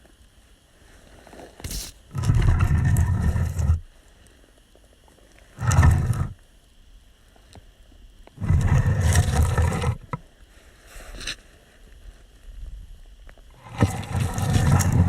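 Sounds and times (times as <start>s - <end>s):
stone door grinding: 2.1s - 3.8s, 5.6s - 6.4s, 8.4s - 10.2s, 13.6s - 15.0s.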